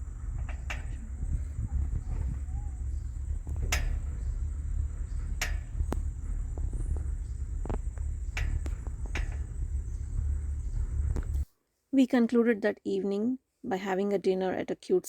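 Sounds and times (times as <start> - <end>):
thin high whine: 0.0 - 11.5
wind rumbling on microphone: 0.0 - 11.5.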